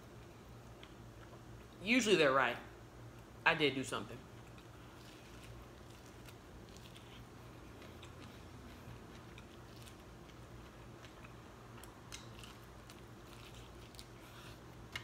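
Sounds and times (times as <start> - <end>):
low steady hum: 0.0 - 15.0
person chewing food: 4.4 - 15.0.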